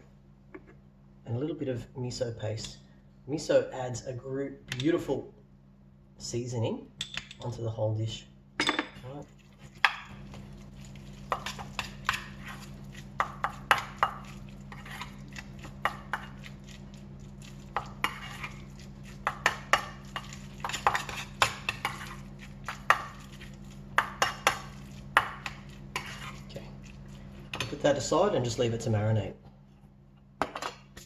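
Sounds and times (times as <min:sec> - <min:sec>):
utensil scraping mixing bowl: 0:09.2 - 0:28.5.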